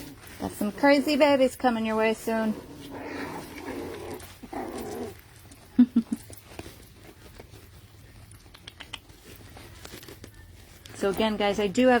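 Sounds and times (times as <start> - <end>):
puppies whining and grunting: 0.0 - 10.8
faint clicks and scuffles: 3.4 - 12.0.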